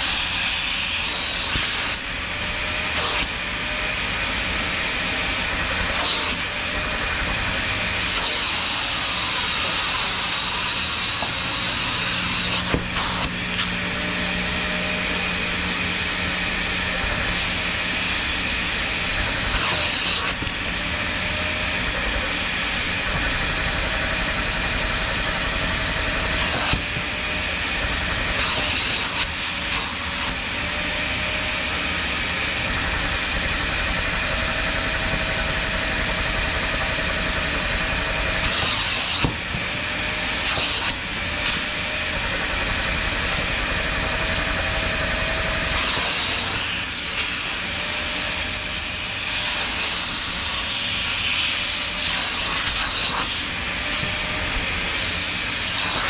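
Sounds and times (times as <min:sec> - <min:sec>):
machine hum and hiss: 0:00.0 - 0:56.0.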